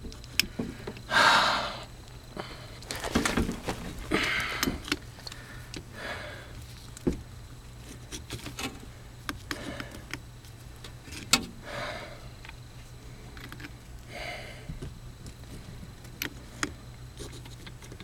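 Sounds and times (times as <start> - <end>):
steady low hum: 0.0 - 18.0
scrapes and rustles: 2.8 - 5.0.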